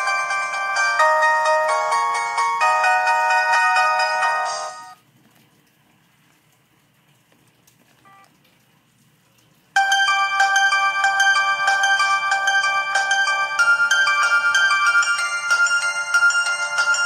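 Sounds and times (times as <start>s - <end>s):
phone ringtone melody: 0.0s - 5.0s, 9.8s - 17.0s.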